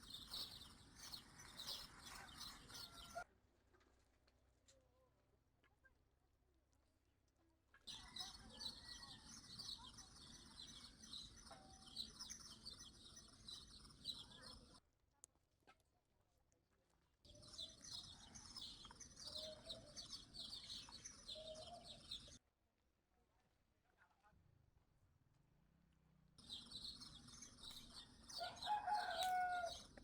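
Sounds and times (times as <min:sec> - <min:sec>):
small birds chirping: 0:00.0 - 0:03.2, 0:07.8 - 0:14.8, 0:17.3 - 0:22.4, 0:26.4 - 0:30.0.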